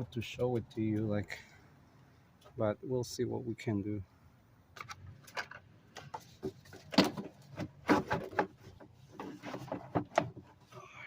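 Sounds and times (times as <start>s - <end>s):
objects being handled and knocked: 4.8s - 10.6s.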